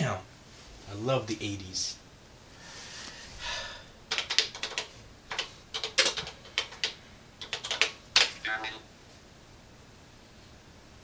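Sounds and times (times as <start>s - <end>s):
keyboard keys clicking: 4.1s - 8.4s.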